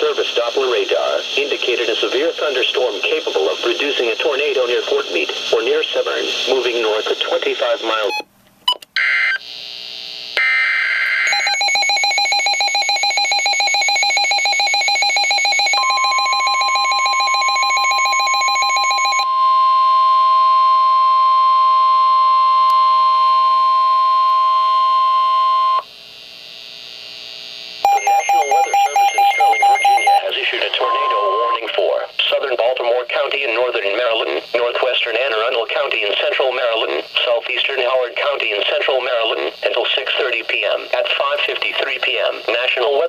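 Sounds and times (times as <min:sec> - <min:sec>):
steady warning alarm tone: 0:10.4 - 0:25.9, 0:27.8 - 0:31.6
rapidly pulsing electronic beep: 0:11.2 - 0:19.2, 0:27.9 - 0:31.6.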